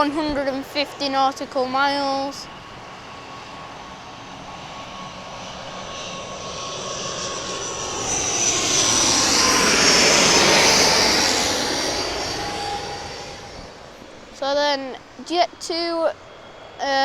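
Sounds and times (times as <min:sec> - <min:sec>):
turboprop aircraft engines whining: 0:00.0 - 0:17.0.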